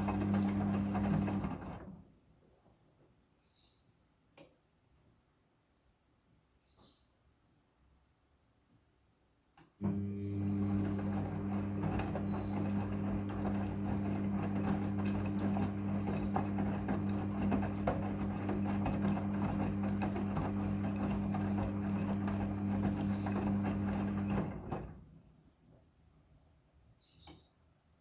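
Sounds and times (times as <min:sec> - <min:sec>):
washing machine motor hum: 0:00.0 - 0:02.0, 0:09.8 - 0:25.1.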